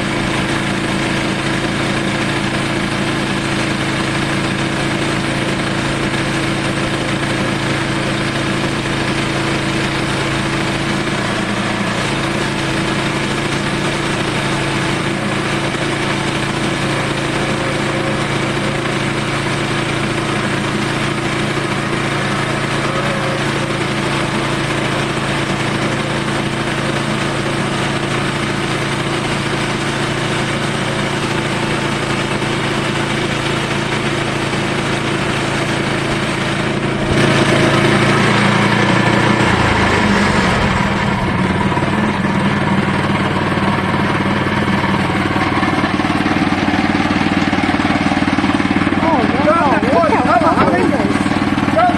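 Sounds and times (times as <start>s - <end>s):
sawmill engine running: 0.0s - 51.9s.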